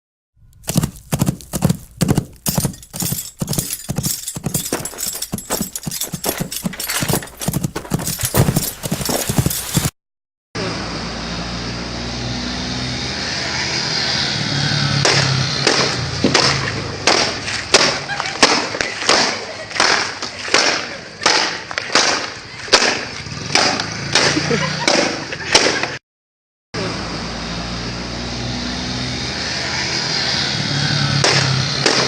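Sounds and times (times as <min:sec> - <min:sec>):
clip-clop knocks: 0:00.6 - 0:09.9.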